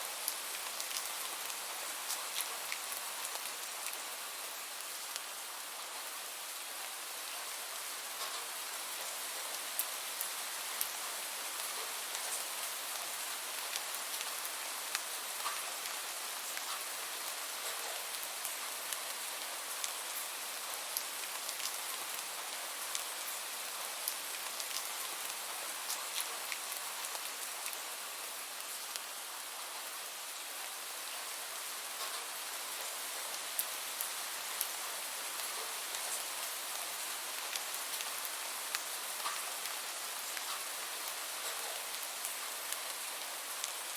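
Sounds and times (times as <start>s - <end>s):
steady rain falling: 0.0s - 43.9s.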